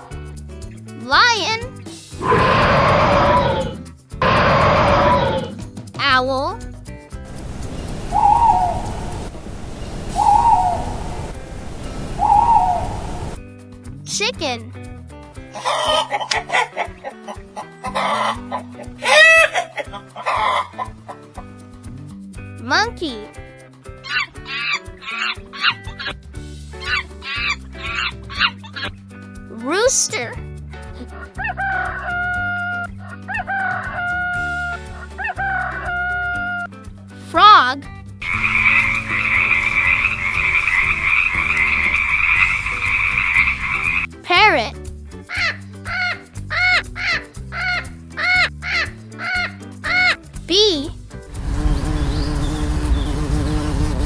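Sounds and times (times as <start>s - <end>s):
light background music: 0.0s - 54.0s
owl hooting: 2.2s - 5.6s, 7.3s - 13.4s, 38.2s - 44.1s
rooster crowing: 2.2s - 5.6s, 7.3s - 13.4s, 31.4s - 32.8s, 33.4s - 36.6s, 38.2s - 44.0s
steady low rumble: 7.3s - 13.4s.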